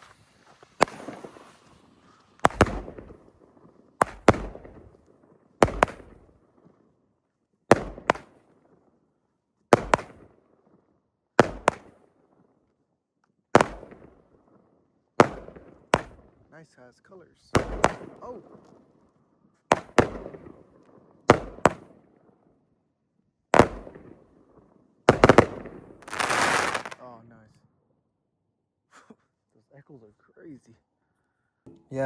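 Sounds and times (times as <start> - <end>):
firework bangs echoing: 0.0 - 6.8, 7.7 - 8.9, 9.7 - 10.5, 11.4 - 12.1, 13.6 - 14.5, 15.2 - 16.5, 17.5 - 18.9, 19.7 - 22.1, 23.6 - 24.4, 25.1 - 27.0.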